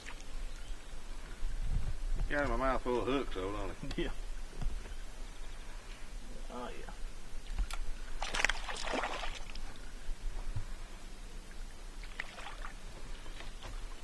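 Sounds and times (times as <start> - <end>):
water splashing at a boat: 7.4 - 9.9, 11.5 - 14.0.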